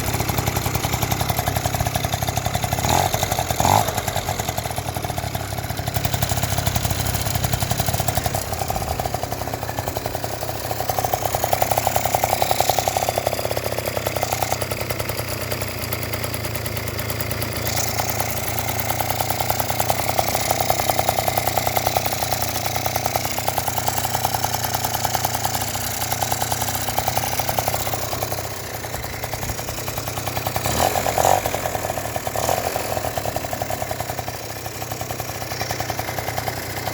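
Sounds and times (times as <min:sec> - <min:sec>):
scooter engine idling and revving: 0:00.0 - 0:36.9.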